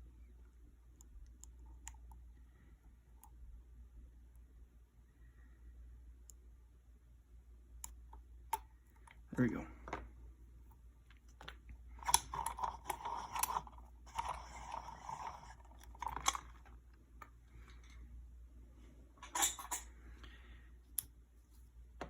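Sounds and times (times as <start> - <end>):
lock picks clicking and rattling: 11.4 - 16.8.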